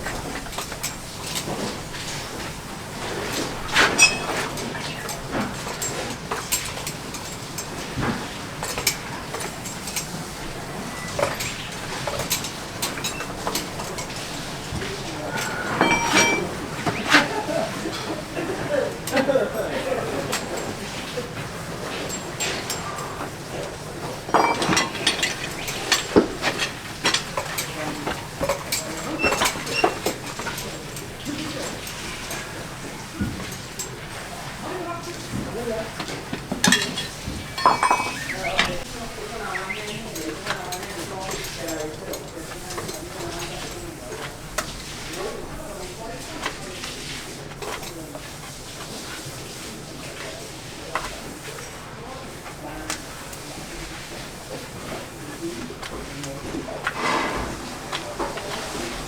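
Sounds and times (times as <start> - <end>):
hand tools scraping a hoof: 0.2 - 7.6, 8.9 - 18.1, 21.6 - 34.0, 35.2 - 40.6
metallic clink: 4.0 - 4.4, 15.8 - 16.6, 24.3 - 26.2, 36.6 - 38.8.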